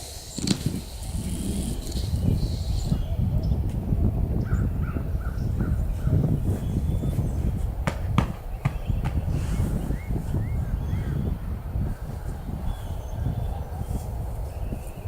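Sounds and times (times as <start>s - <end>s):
bird calling: 0.0s - 15.0s
wind buffeting microphone: 0.0s - 15.0s
sharp knocks: 7.8s - 9.5s.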